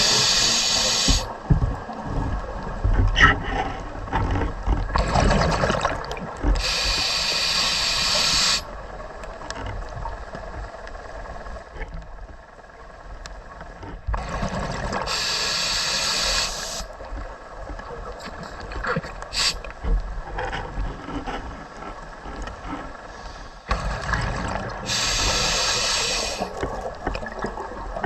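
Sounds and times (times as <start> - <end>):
regulator inhalation hiss: 0.0 - 1.3, 6.6 - 8.7, 15.0 - 16.9, 19.3 - 19.7, 24.8 - 26.6
exhaled bubbles rushing: 5.0 - 6.3.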